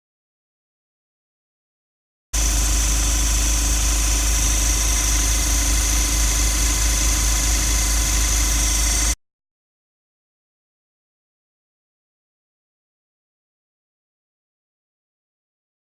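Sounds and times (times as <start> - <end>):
diesel engine idling: 2.4 - 9.2
high whine: 2.4 - 9.2.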